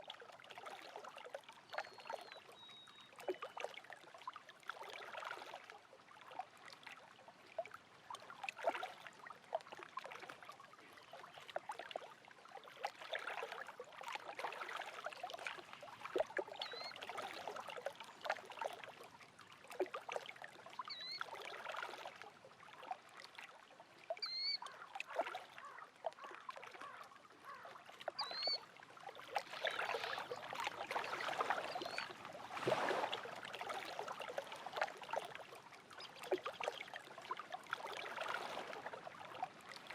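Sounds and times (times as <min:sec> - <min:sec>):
lake waves lapping shore: 0:00.0 - 0:39.9
bird chirping: 0:24.2 - 0:24.6.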